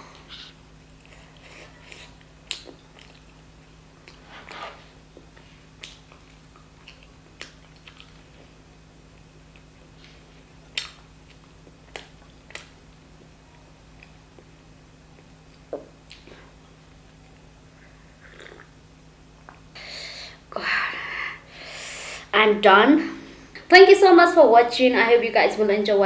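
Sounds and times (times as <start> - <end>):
faint steady hum: 0.0 - 26.0
wet mouth clicks while chewing: 1.8 - 3.4, 5.2 - 8.2, 9.5 - 13.3, 15.2 - 16.3.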